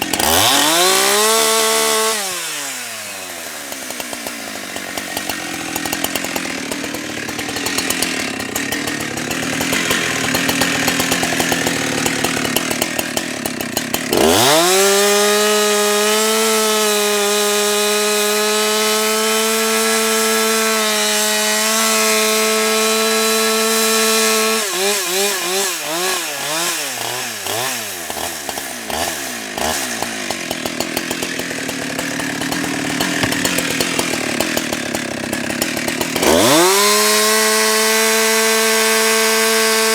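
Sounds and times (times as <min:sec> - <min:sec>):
chainsaw cutting logs: 0:00.0 - 0:39.9
chainsaw revving at full throttle: 0:00.0 - 0:39.9.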